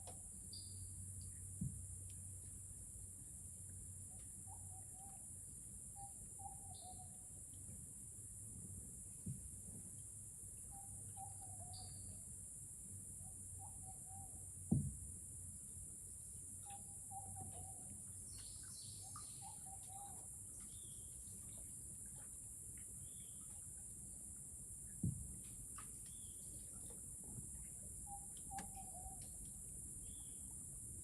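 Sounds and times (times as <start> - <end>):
bird wavering call: 4.4 - 5.2, 6.0 - 7.3, 10.7 - 12.2, 13.6 - 14.4, 16.6 - 18.0, 19.0 - 20.3, 28.1 - 29.4.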